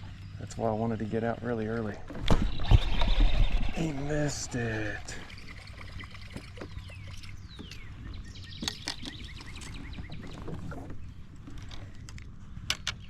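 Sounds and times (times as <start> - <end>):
birds calling: 0.0 - 13.0
fishing gear clicks and knocks: 5.9 - 13.0.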